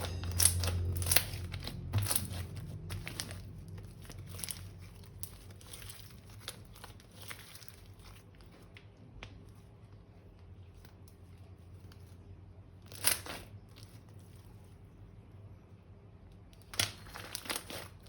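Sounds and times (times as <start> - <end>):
plastic packaging crinkling: 0.0 - 8.8, 16.7 - 18.0.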